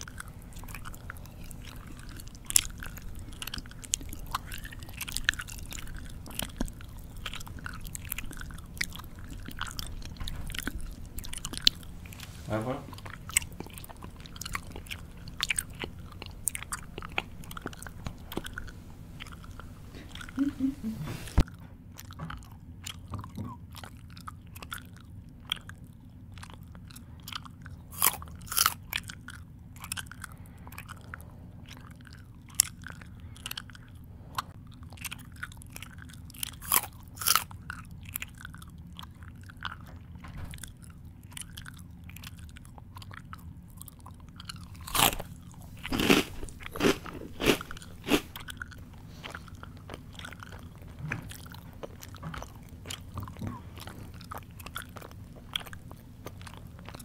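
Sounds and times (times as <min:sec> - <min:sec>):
person chewing food loudly: 0:00.0 - 0:57.0.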